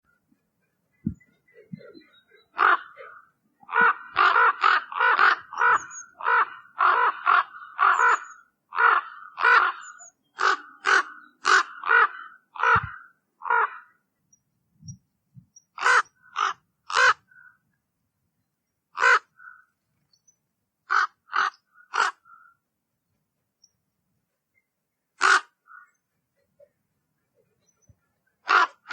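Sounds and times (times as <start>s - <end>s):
raven calling: 1.1s - 14.0s, 15.8s - 17.6s, 19.0s - 19.7s, 20.9s - 22.6s, 25.2s - 26.0s, 28.4s - 28.9s.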